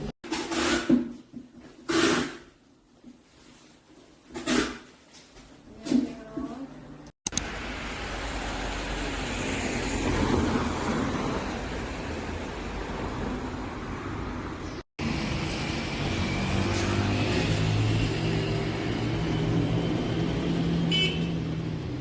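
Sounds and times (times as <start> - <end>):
engine hum: 7.2 - 22.0
traffic rushing: 7.3 - 22.0.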